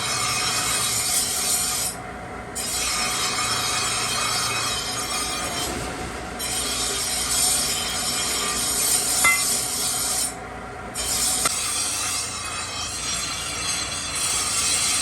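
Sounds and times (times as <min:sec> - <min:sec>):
cleaver blade grinding: 0:07.6 - 0:10.4.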